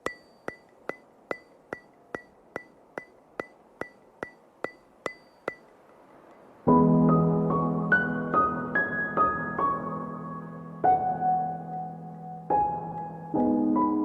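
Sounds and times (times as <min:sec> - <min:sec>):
sharp ringing ticks: 0:00.0 - 0:06.5
sustained piano chords: 0:06.7 - 0:14.0.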